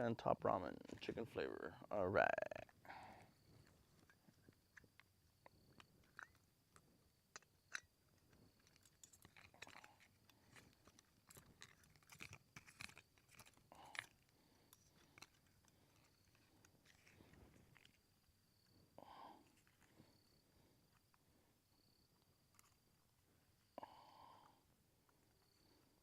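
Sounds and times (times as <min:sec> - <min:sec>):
food packet crinkling: 0:08.6 - 0:14.5.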